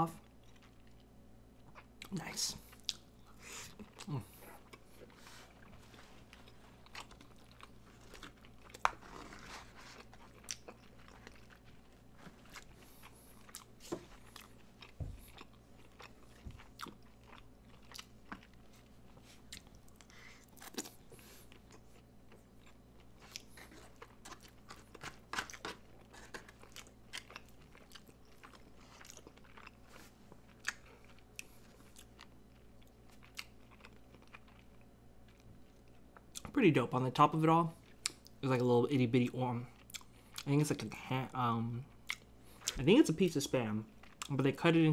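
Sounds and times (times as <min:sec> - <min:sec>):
low steady hum: 0:00.0 - 0:44.9
wet chewing and mouth clicks: 0:09.9 - 0:36.5, 0:39.8 - 0:40.5, 0:42.0 - 0:42.8.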